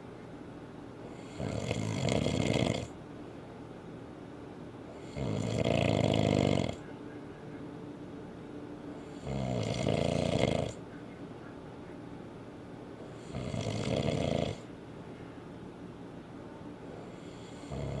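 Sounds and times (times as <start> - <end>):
man snoring loudly: 1.2 - 2.9, 5.0 - 6.8, 9.1 - 10.8, 13.2 - 14.7, 17.1 - 18.0.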